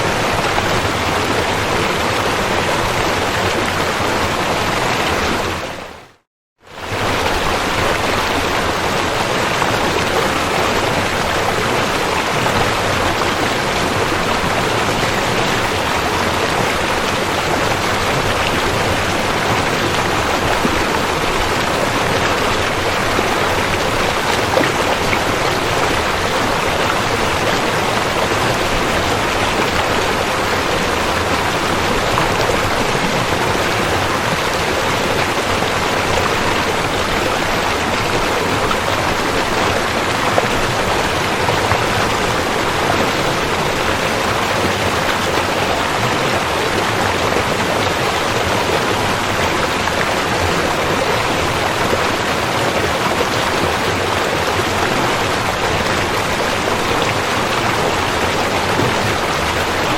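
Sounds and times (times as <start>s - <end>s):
river water rushing and splashing: 0.0s - 59.9s.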